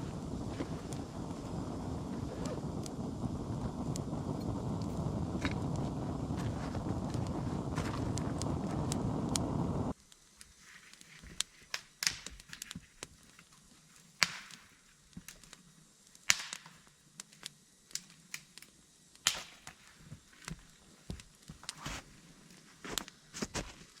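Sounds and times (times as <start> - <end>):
loud rushing noise: 0.0 - 9.9
wood fire crackling: 0.0 - 24.0.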